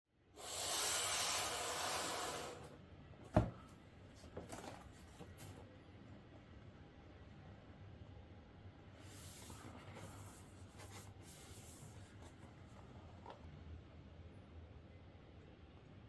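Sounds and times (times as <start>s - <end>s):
low background hum: 1.5s - 16.0s.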